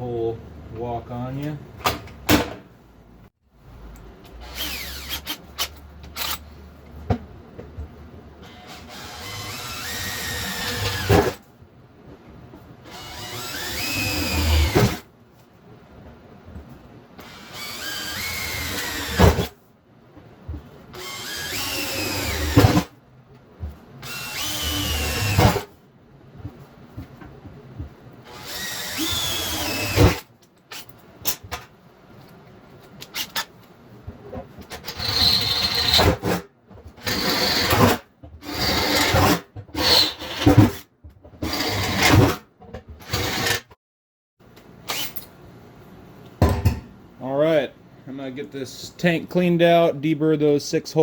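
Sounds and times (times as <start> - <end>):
electric drill boring metal: 4.4 - 5.3, 8.5 - 11.1, 12.9 - 15.0, 17.2 - 19.3, 21.0 - 22.7, 24.0 - 25.5, 28.3 - 30.2.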